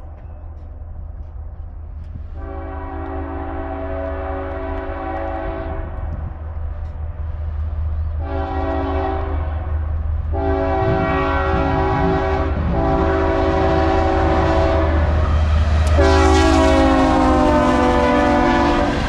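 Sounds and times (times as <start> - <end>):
diesel locomotive rumble: 0.0 - 19.0
locomotive air horn: 2.4 - 6.0, 8.2 - 9.5, 10.3 - 19.0.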